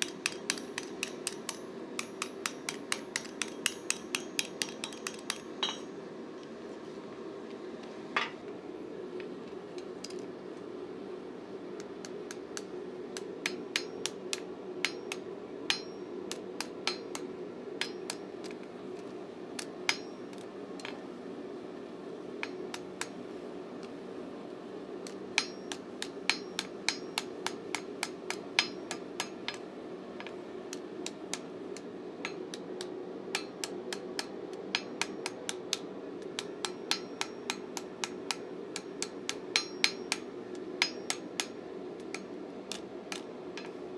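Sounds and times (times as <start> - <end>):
hammer tapping on steel: 0.0 - 5.9, 11.8 - 18.6, 19.6 - 21.0, 22.4 - 24.0, 25.0 - 43.9.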